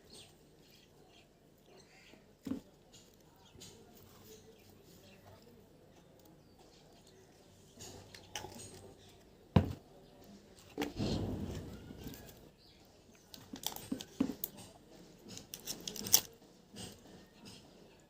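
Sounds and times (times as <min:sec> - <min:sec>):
knock: 0:09.6 - 0:09.8.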